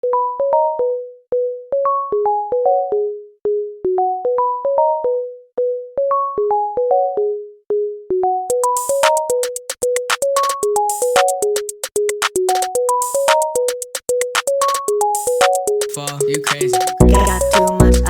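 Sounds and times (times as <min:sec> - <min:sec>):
plucked synth melody: 0:08.4 - 0:18.0
drum machine beat with hi-hats: 0:08.5 - 0:18.0.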